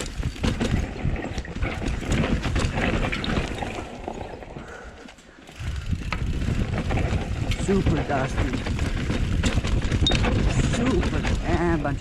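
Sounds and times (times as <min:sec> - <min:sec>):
bike rattling: 0:00.0 - 0:12.0
bike tyres crunching over rocks: 0:00.0 - 0:12.0.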